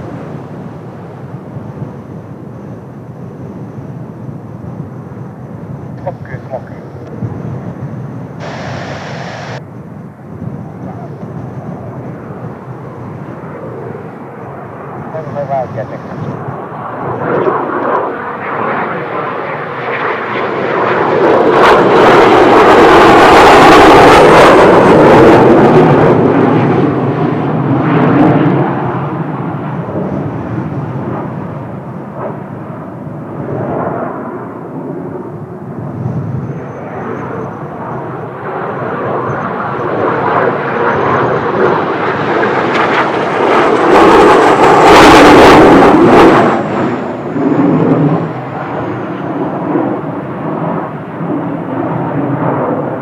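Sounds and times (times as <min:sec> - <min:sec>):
jet aircraft flying past: 0:00.0 - 0:53.0
thin high whine: 0:05.9 - 0:09.8.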